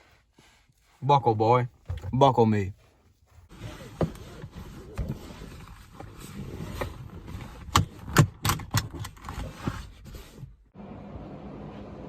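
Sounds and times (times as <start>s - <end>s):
low car cabin noise: 1.1s - 12.0s
seatbelt clicking: 6.7s - 9.5s.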